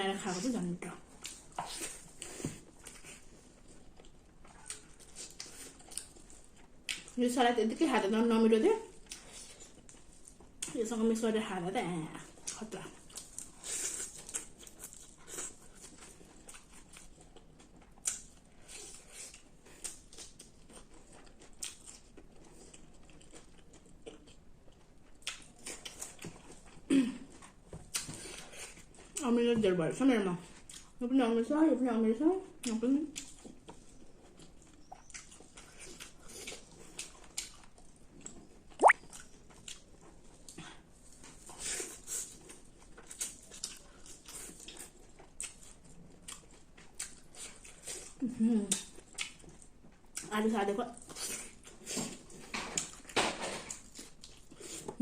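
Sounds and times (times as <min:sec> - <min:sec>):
person chewing and crunching: 0:01.1 - 0:07.2, 0:12.4 - 0:29.2, 0:33.2 - 0:50.3, 0:51.0 - 0:55.0
wet mouth clicks: 0:38.8 - 0:39.2.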